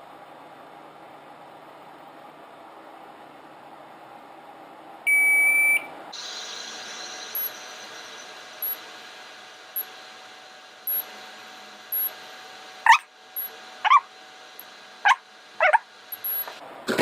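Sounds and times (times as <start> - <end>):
dog whining: 12.8 - 13.1, 13.8 - 14.1, 15.0 - 15.8.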